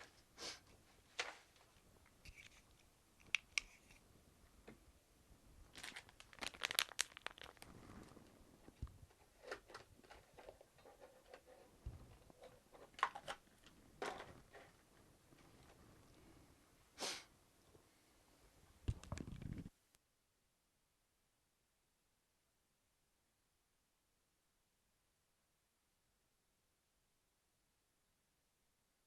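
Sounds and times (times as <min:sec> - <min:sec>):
rustling: 0:05.7 - 0:16.5.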